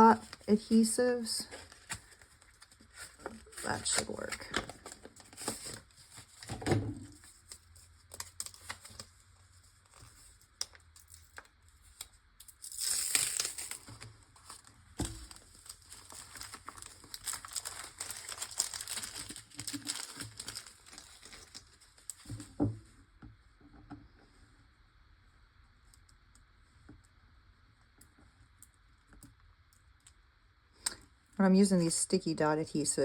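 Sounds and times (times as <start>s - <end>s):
paper and plastic crinkling: 0.0s - 22.6s.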